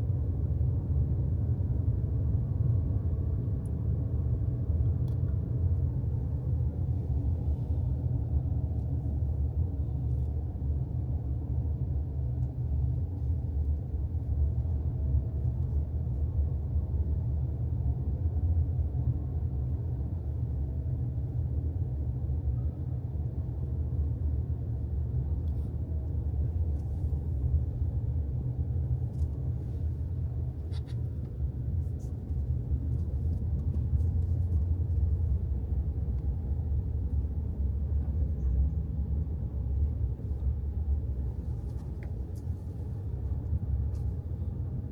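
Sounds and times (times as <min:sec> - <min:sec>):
car driving rumble: 0:25.2 - 0:44.9.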